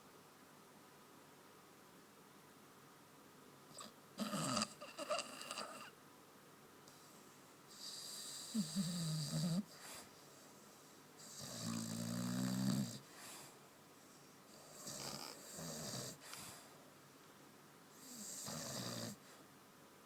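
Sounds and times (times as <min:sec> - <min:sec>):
dog snoring: 0:03.7 - 0:05.9, 0:07.7 - 0:10.0, 0:11.2 - 0:13.4, 0:14.5 - 0:16.4, 0:18.0 - 0:19.4.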